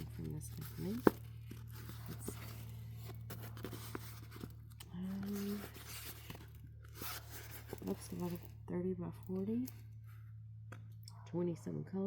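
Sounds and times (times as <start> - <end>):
small clicks and scraping: 0.0 - 8.6
low hum: 0.0 - 12.0.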